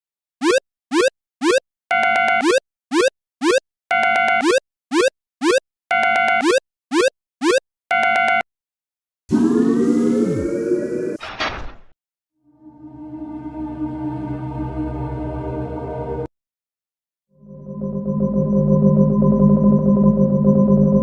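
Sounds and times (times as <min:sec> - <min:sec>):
upward-gliding electronic chirps: 0:00.4 - 0:08.4.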